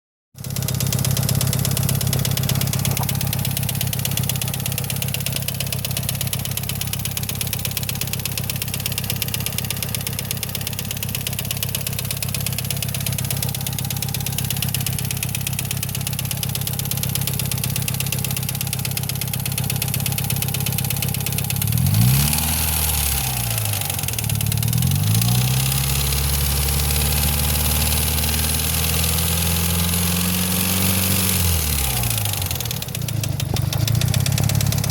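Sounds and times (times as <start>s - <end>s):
car engine idling: 0.4s - 28.9s, 31.2s - 34.9s
rapid engine ticking: 0.4s - 34.9s
engine revving: 21.6s - 34.9s.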